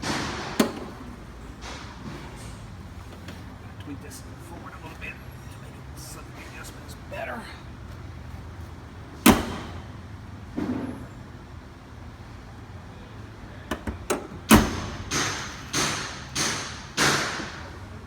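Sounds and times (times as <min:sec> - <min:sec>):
car hood thud: 0:00.0 - 0:01.0, 0:09.2 - 0:09.9, 0:13.7 - 0:17.6
hood pin clicks: 0:00.0 - 0:01.0, 0:09.2 - 0:09.7, 0:13.7 - 0:17.5
car hood knocking: 0:09.2 - 0:09.8, 0:13.7 - 0:17.6.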